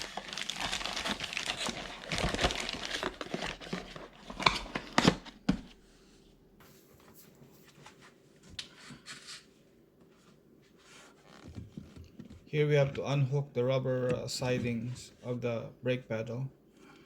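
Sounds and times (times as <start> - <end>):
packaging crinkling and rustling: 0.0 - 5.7.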